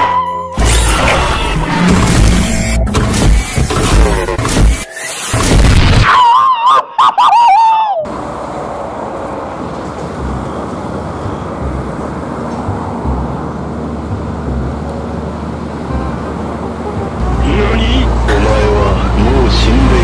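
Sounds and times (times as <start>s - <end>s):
road traffic: 0.0s - 5.5s, 7.3s - 20.0s
passing vehicles rumbling: 8.1s - 20.0s.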